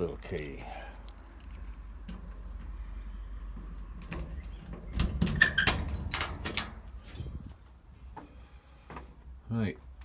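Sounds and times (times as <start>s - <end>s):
keys rattling in door lock: 0.0s - 2.6s, 3.7s - 7.4s
door opening: 3.8s - 7.6s.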